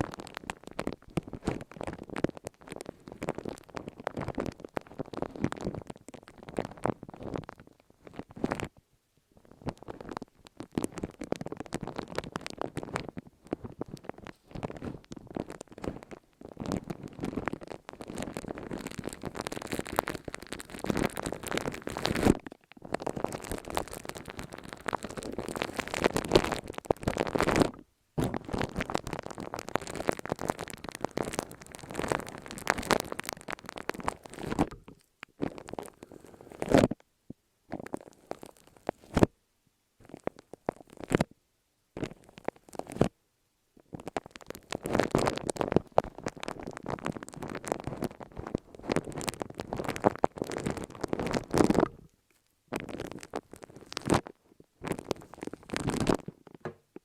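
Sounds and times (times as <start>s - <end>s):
crackly rustling handling sounds: 9.5s - 37.0s, 44.0s - 57.0s.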